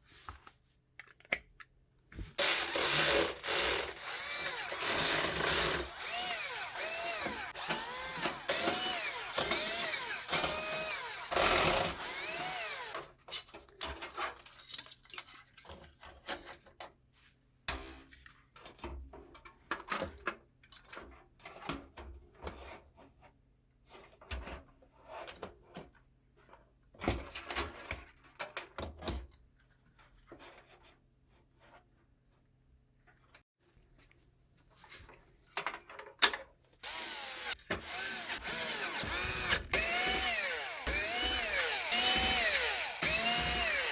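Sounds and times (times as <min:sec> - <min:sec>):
clicks and knocks of parts handled: 0:01.0 - 0:01.8
electric screwdriver whirring: 0:02.4 - 0:13.0, 0:36.8 - 0:43.9.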